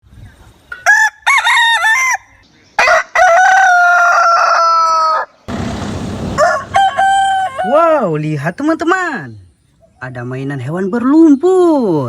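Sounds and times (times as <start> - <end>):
rooster crowing: 0.8 - 5.4, 6.3 - 8.1
burst of noise: 5.5 - 7.4.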